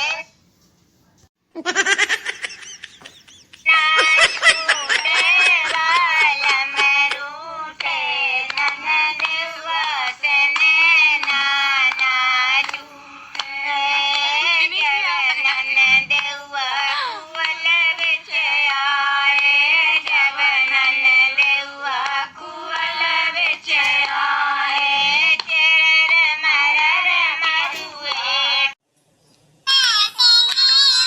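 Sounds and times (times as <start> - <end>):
high-pitched pitch-shifted singing: 29.7 - 31.0.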